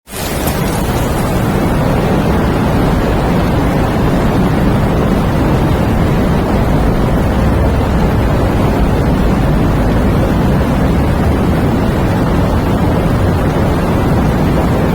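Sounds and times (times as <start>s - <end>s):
rain hissing: 0.0s - 3.3s
wind rumble: 0.0s - 14.9s.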